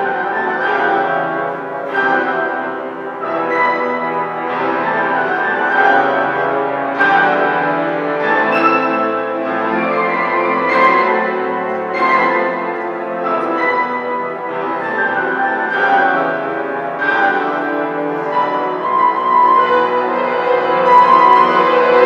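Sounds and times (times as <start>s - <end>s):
small ensemble playing lively music: 0.0s - 22.0s.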